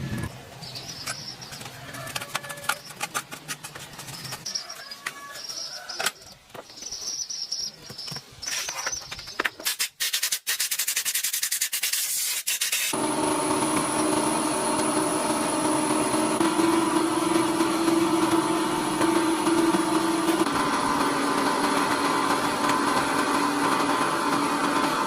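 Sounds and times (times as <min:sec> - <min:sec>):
steady mechanical hum: 0:00.0 - 0:09.6, 0:12.9 - 0:25.0
scraping and rubbing: 0:01.0 - 0:06.5, 0:07.8 - 0:12.8.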